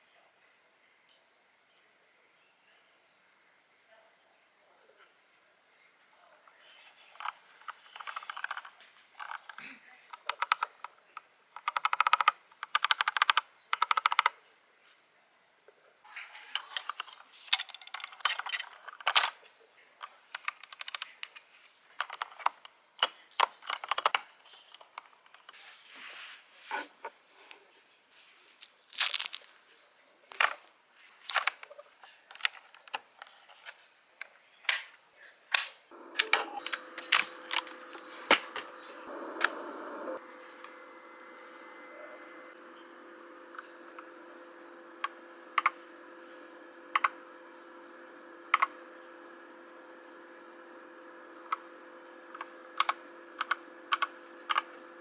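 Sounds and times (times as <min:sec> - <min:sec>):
mechanical keyboard typing: 0:10.2 - 0:10.7, 0:11.6 - 0:14.3, 0:20.4 - 0:21.1
packaging being handled: 0:28.2 - 0:29.6
steady hum with held tones: 0:35.9 - 0:55.0.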